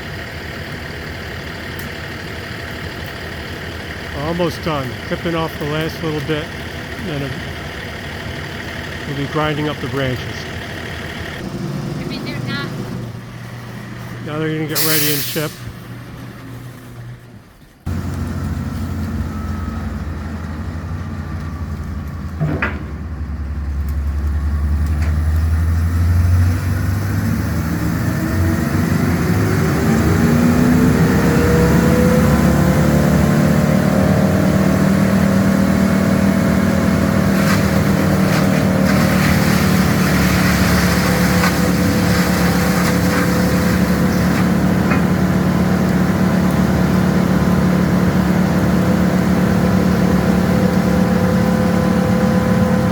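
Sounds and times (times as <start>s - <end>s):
wood chipper engine running: 0.0s - 52.9s.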